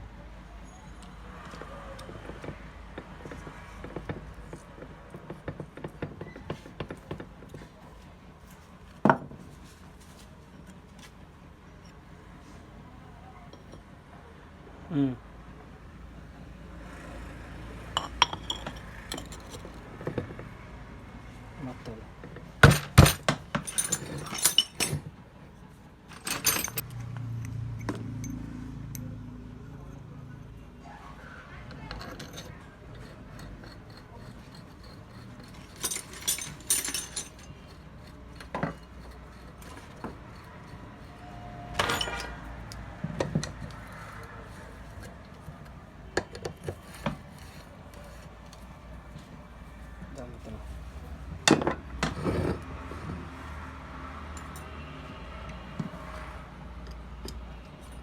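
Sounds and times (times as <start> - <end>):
hand tools tapping and clicking: 1.5 - 7.7, 31.8 - 48.7
metal tools clinking: 18.0 - 20.2, 22.6 - 25.1, 26.1 - 27.1, 31.9 - 43.8.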